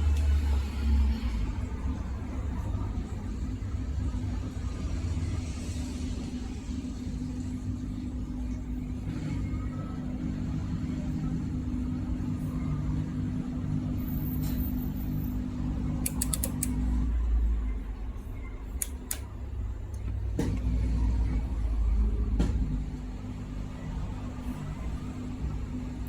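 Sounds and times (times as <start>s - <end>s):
dishwasher motor hum: 0.0s - 26.0s
sharp clicks: 16.0s - 16.8s, 18.7s - 19.3s.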